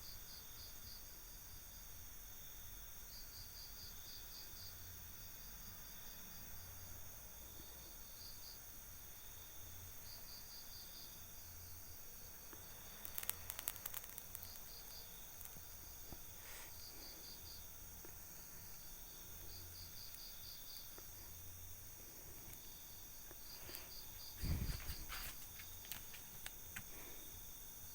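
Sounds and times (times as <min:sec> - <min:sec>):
insects chirping: 0:00.0 - 0:27.9
sharp clicks: 0:13.0 - 0:14.7.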